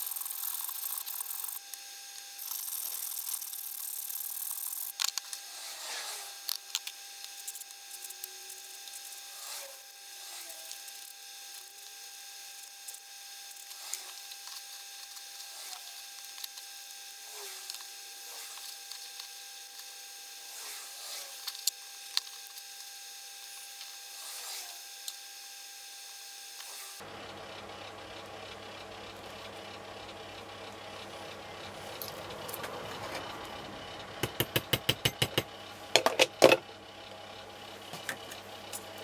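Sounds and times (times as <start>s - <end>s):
hand file scraping metal: 5.5s - 11.0s.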